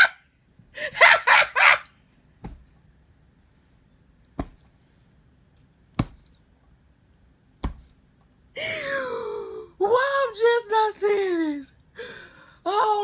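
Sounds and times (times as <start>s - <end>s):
man crying out: 0.8s - 1.8s.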